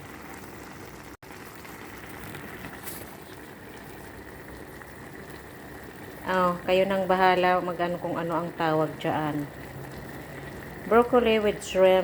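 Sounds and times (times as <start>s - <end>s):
food simmering hiss: 0.0s - 12.0s.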